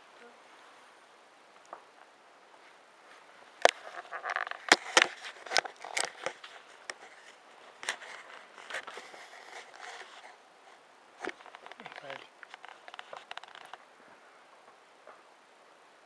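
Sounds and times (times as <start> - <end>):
kittens scuffling: 2.6 - 13.8
claws scrabbling: 3.6 - 13.8.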